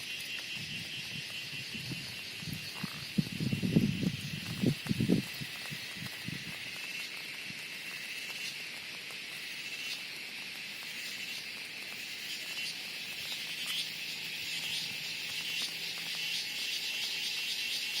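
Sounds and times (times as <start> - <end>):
cicada chorus buzzing: 0.0 - 18.0.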